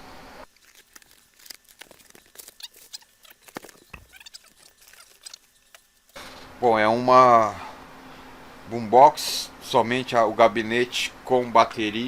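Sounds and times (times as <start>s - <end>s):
packaging scratching and crackling: 0.4s - 6.2s.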